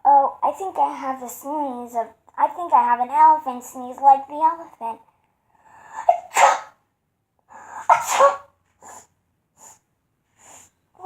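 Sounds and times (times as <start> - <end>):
soft breaths: 5.1 - 6.3, 7.4 - 11.0
child mock sneezing: 6.0 - 6.8, 7.7 - 9.1.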